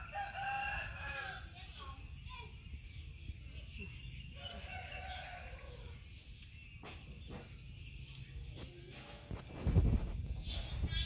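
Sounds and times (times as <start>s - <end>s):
rooster crowing: 0.0s - 1.6s, 4.4s - 6.0s.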